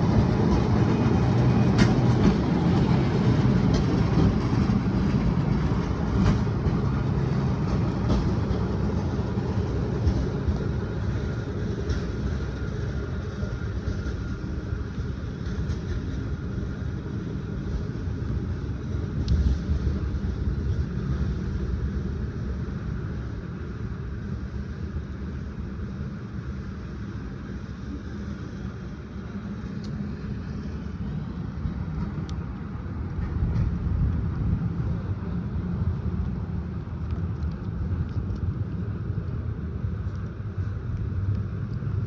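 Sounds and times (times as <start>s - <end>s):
city street traffic rumble: 0.0s - 42.0s.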